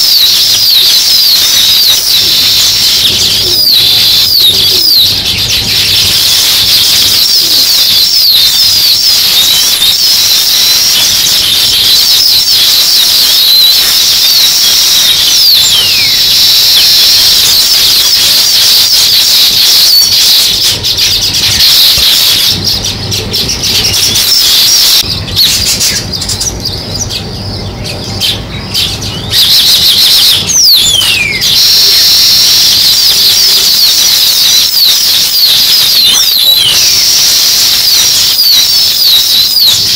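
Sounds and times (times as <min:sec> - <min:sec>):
sparrows chirping: 0:00.0 - 0:16.4, 0:19.1 - 0:31.7.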